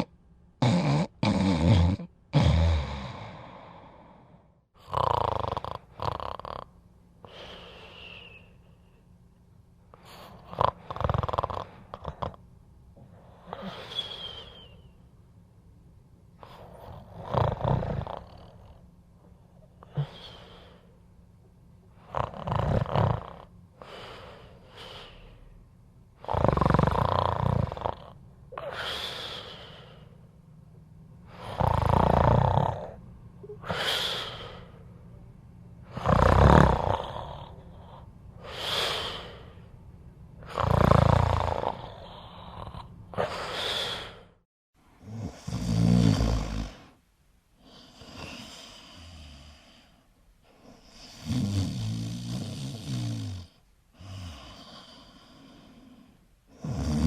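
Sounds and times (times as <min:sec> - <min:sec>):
person snoring loudly: 0:00.0 - 0:06.7, 0:10.3 - 0:12.4, 0:16.7 - 0:18.8, 0:22.0 - 0:23.5, 0:26.2 - 0:30.1, 0:31.3 - 0:33.0, 0:35.9 - 0:39.6, 0:40.4 - 0:44.3, 0:45.0 - 0:47.0, 0:51.0 - 0:57.0.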